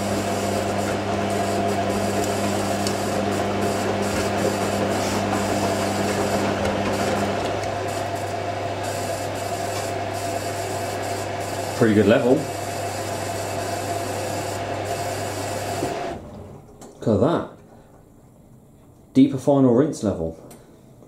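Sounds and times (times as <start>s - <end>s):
water running into machine: 0.0s - 16.3s
washing machine low hum: 0.0s - 16.8s.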